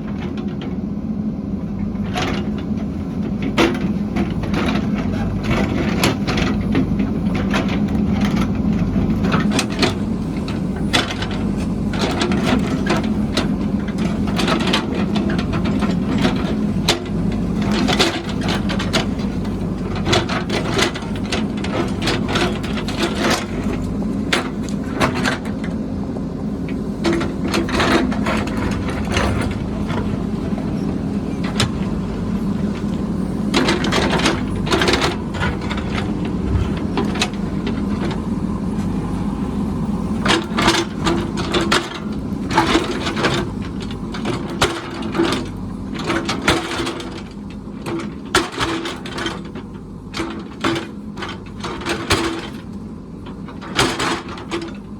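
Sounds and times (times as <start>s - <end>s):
diesel engine running: 0.0s - 54.9s
metal clanks and knocks: 3.4s - 25.9s, 26.5s - 39.0s.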